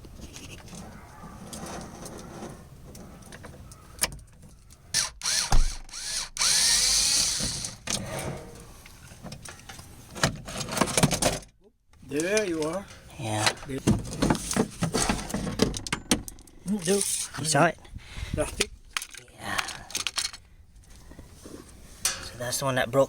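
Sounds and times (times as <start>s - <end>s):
electric drill whirring: 5.0s - 7.8s
metal parts clattering: 12.2s - 17.4s, 18.9s - 20.4s.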